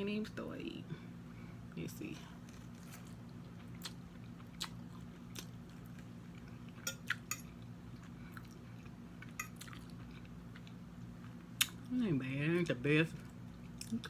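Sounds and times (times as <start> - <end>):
low steady hum: 0.0 - 14.0
chewing with mouth smacks: 2.5 - 11.8.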